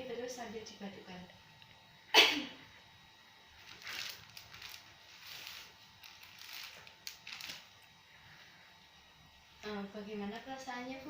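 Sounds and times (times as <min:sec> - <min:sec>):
person coughing: 0:02.1 - 0:02.6
faint clicks and rustles: 0:03.6 - 0:08.0.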